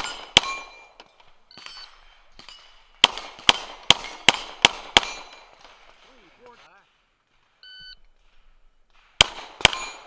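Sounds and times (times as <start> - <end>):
pistol shots: 0.0 - 1.0, 1.6 - 6.2, 8.9 - 10.0.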